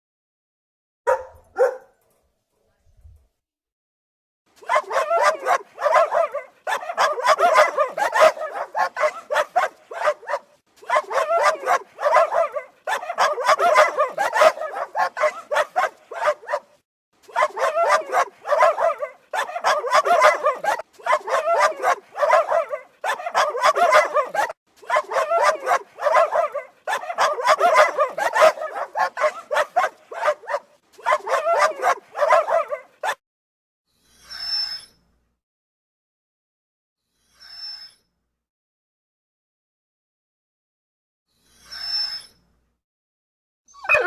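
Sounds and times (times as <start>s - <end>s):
dogs barking: 1.1s - 2.0s, 4.6s - 33.2s, 43.8s - 44.0s.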